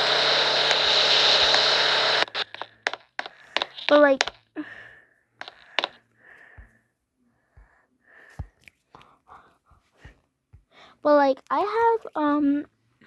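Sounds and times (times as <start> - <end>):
child breathing and whispery puffs: 7.4 - 11.0.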